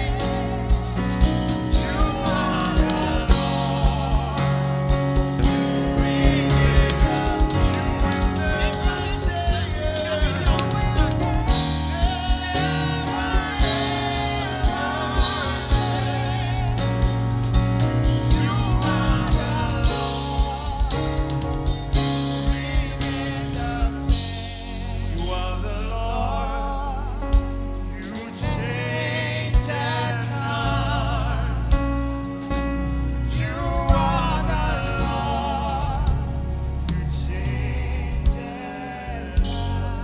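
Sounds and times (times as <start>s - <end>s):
steady drum beat: 0.0s - 25.5s
sustained keyboard notes: 0.0s - 26.2s
gospel singing: 0.0s - 40.0s.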